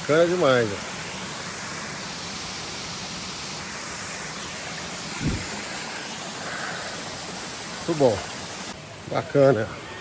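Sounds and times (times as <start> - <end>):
waterfall rushing: 0.0 - 8.8
low thump: 5.2 - 5.6.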